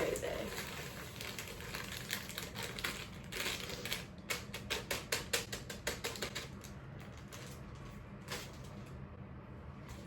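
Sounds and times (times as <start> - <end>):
packet rustling: 0.0 - 4.7.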